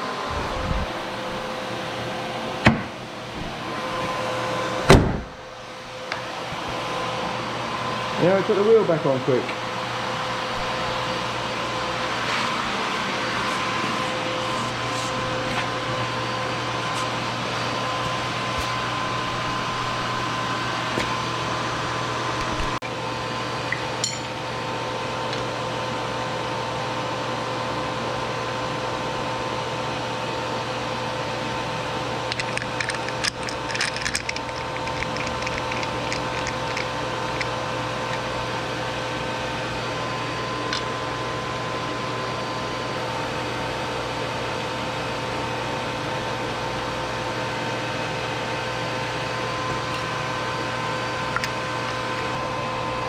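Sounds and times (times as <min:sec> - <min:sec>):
steady machine hum: 0:00.0 - 0:53.0
rapid clicks: 0:32.3 - 0:37.5.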